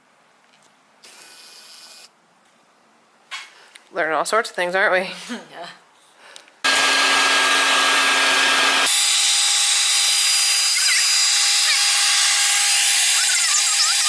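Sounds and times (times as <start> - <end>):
electric power tool motor: 6.7 - 14.0.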